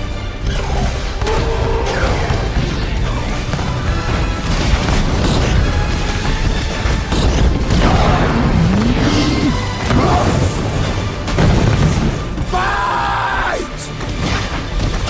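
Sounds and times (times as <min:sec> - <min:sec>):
orchestral score: 0:00.0 - 0:15.0.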